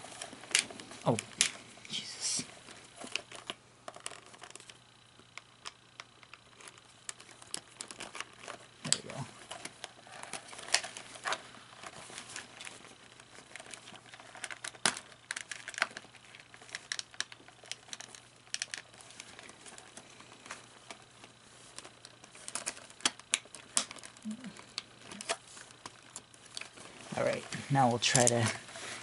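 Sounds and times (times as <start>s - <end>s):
plastic parts clicking and rattling: 2.9s - 29.0s.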